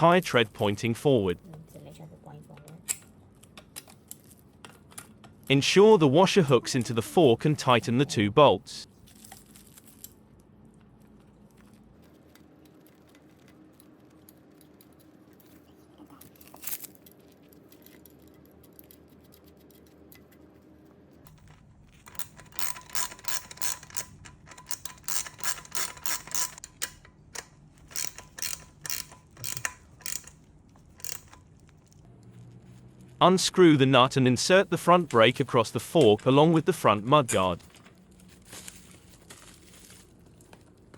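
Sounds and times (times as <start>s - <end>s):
ratchet wrench clicking: 21.3s - 31.5s.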